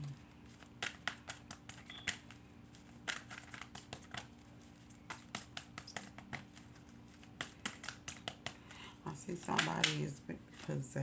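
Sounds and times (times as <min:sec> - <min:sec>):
cards being shuffled: 0:00.0 - 0:08.8, 0:09.4 - 0:10.8
sharp card snaps: 0:00.7 - 0:02.3.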